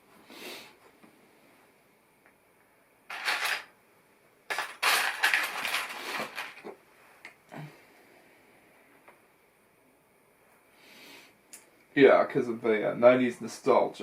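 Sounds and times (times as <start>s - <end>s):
plastic toy bricks clattering: 3.1s - 3.7s, 4.5s - 6.8s.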